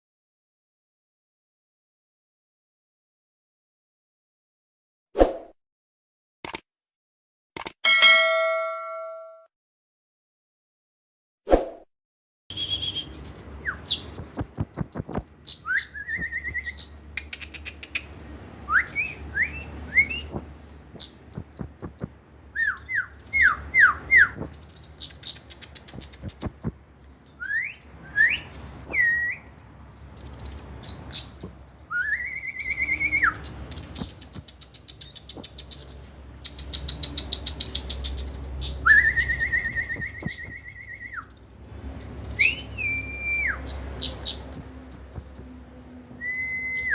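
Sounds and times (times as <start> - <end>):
songbird singing: 12.5 - 46.9.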